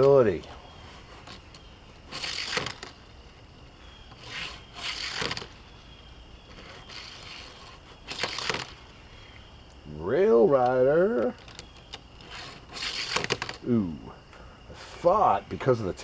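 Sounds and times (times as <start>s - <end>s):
scraping rustling handling noises: 0.0s - 5.8s, 6.5s - 9.0s, 10.5s - 13.6s.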